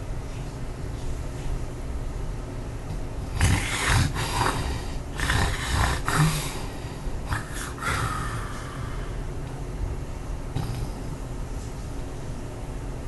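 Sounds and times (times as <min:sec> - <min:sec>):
man snoring loudly: 0:03.3 - 0:06.7, 0:07.3 - 0:08.7.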